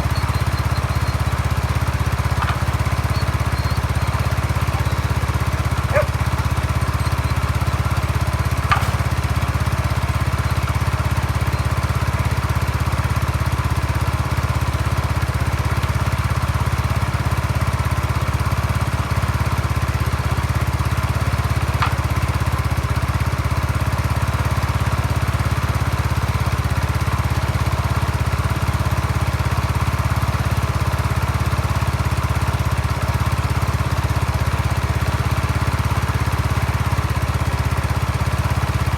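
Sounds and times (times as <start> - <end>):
scooter engine idling: 0.0 - 38.9
faint clicks: 2.3 - 7.4.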